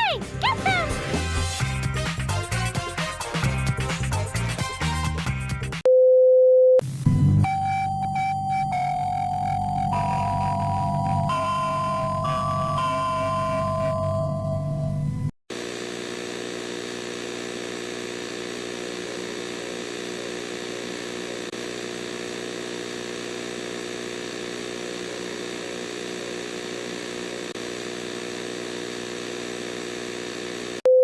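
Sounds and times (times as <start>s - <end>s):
buzzing electronic alarm tone: 7.2s - 15.3s.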